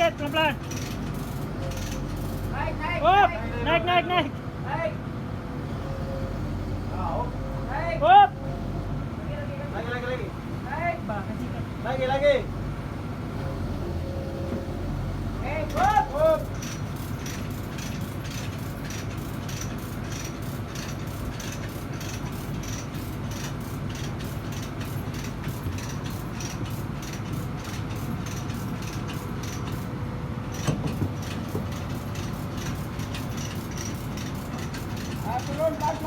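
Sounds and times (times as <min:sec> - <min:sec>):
hoist mechanical clicking: 0:00.0 - 0:02.7, 0:15.4 - 0:36.0
loud knock: 0:30.6 - 0:31.7.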